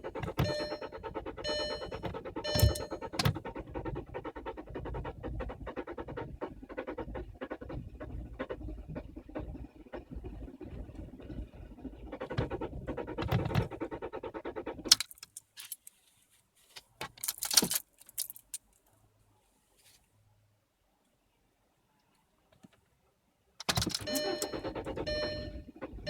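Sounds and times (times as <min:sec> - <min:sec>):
keys jingling: 0:17.2 - 0:18.6
starter cranking car engine: 0:23.6 - 0:26.0.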